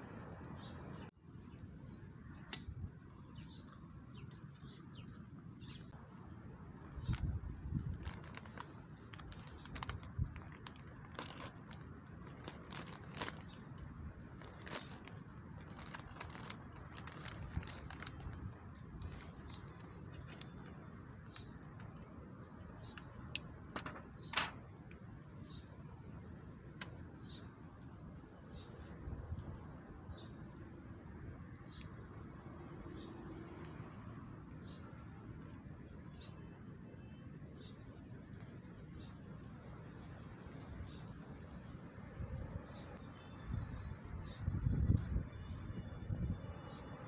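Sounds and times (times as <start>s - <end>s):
wood fire crackling and popping: 23.2s - 24.9s.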